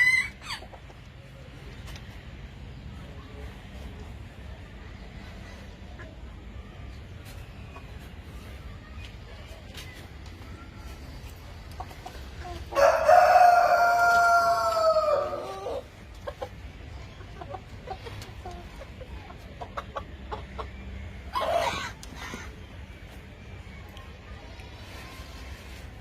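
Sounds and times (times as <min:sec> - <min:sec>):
rooster crowing: 0:12.7 - 0:15.8.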